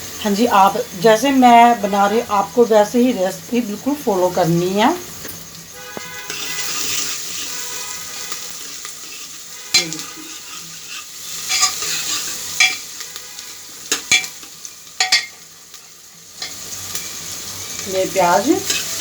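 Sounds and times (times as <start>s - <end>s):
onions sizzling in oil: 0.0s - 19.0s
spoon scraping a pot: 5.2s - 19.0s.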